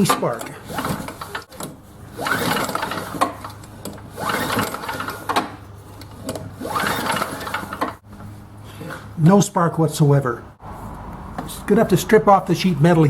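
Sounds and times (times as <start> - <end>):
recoil starter whirring: 0.0 - 9.3.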